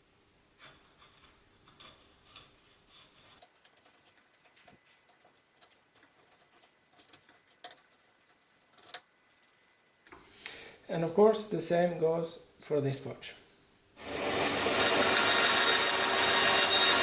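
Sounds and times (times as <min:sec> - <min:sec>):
chisel scraping wood: 0:01.0 - 0:10.0.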